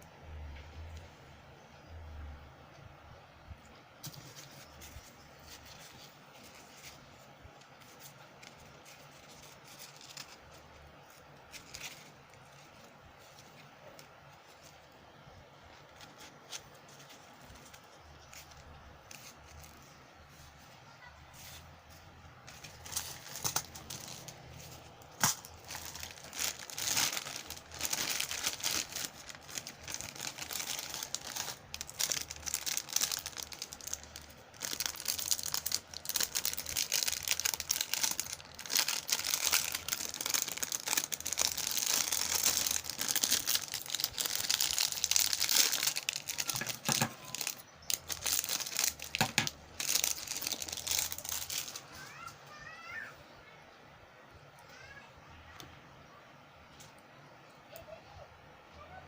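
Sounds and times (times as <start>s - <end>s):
packaging crinkling and tearing: 4.0s - 15.0s, 15.6s - 20.0s, 22.4s - 52.1s.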